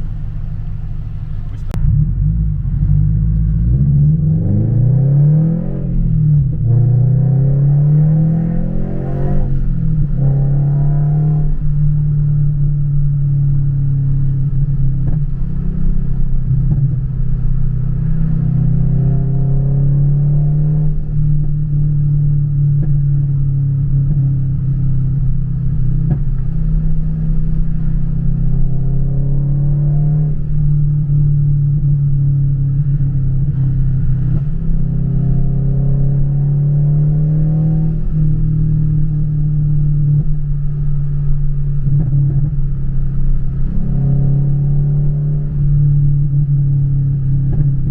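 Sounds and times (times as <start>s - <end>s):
exhaust pops: 0.0s - 4.0s, 22.6s - 28.8s, 37.9s - 47.9s
car engine revving: 0.0s - 47.9s.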